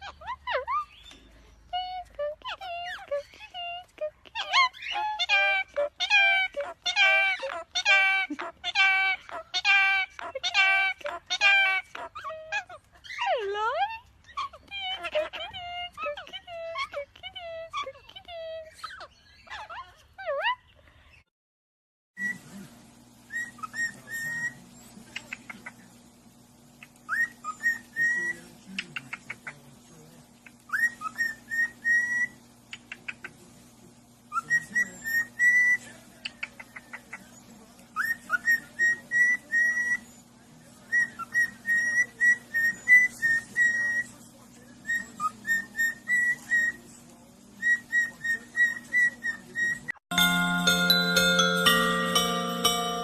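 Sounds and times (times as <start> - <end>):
parrot whistling a tune: 22.2 - 22.5, 23.3 - 24.6, 26.9 - 28.5, 30.7 - 32.4, 34.3 - 35.9, 38.0 - 40.2, 40.9 - 44.2, 44.8 - 46.8, 47.6 - 53.0.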